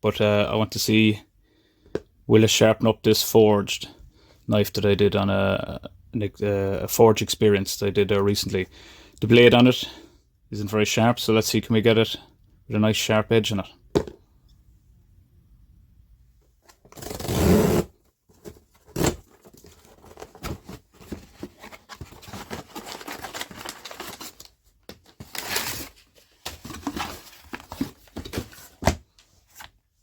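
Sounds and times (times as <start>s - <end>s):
packaging rustling and crinkling: 18.3s - 29.7s
packaging ripping: 21.6s - 26.0s.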